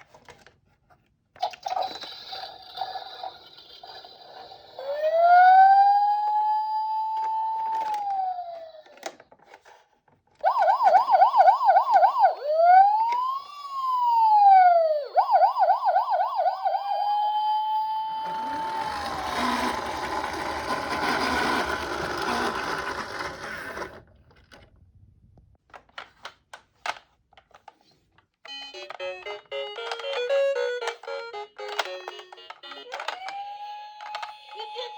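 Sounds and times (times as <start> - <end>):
police siren: 4.8 - 9.0, 10.4 - 22.6, 28.5 - 34.9.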